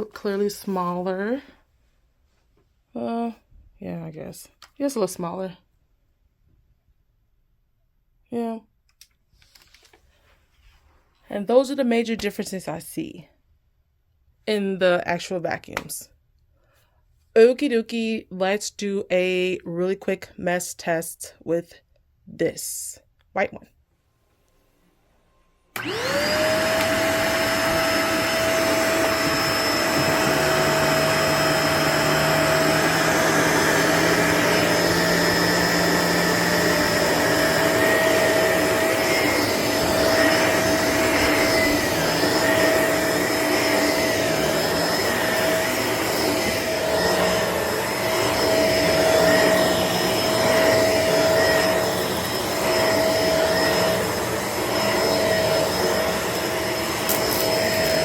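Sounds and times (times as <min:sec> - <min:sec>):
vacuum cleaner motor whine: 0:25.7 - 0:58.0.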